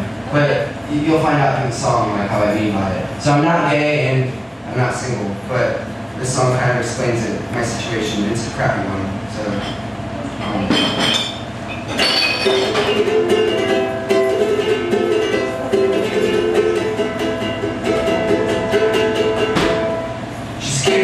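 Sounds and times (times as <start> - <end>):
ukulele strumming: 11.9 - 21.0.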